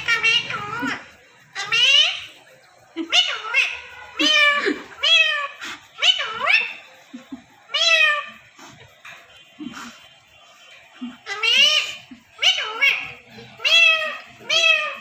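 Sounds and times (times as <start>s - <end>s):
parrot making meow-like calls: 7.7s - 8.4s, 11.2s - 15.0s.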